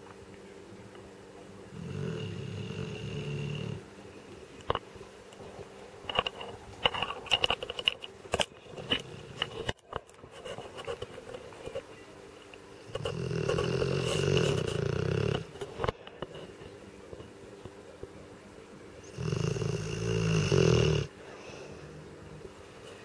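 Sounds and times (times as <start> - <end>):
dog snoring: 1.7 - 3.9, 8.8 - 9.6, 12.8 - 15.7, 19.1 - 21.1.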